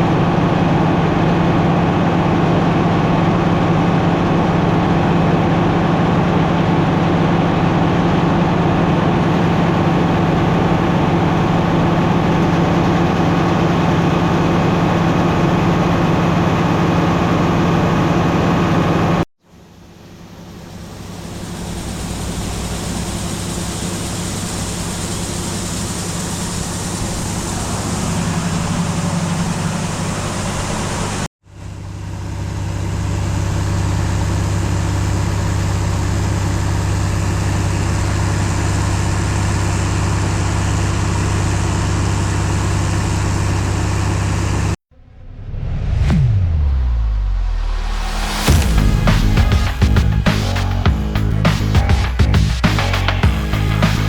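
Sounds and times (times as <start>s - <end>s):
engine humming: 0.0s - 14.7s, 20.4s - 54.0s
different steady engine: 0.0s - 45.6s, 46.6s - 54.0s.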